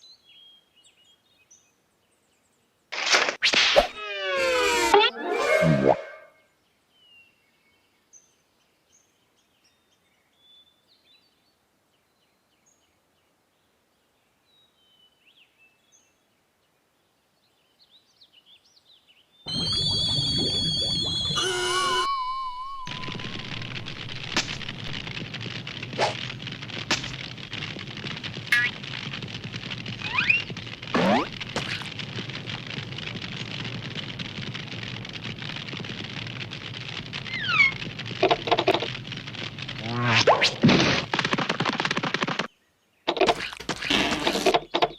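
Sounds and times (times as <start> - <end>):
crackling hiss with snaps: 3.0 - 5.0, 19.5 - 42.5, 43.1 - 44.9
short falling whistle: 19.5 - 25.0.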